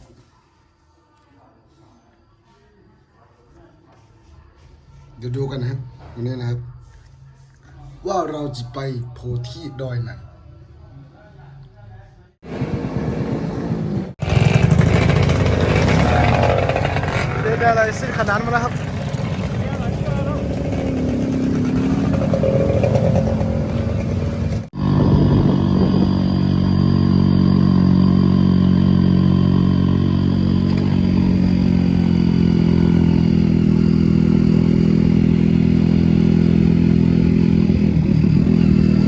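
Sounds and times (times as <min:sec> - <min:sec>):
motorcycle engine running: 0:12.5 - 0:39.0.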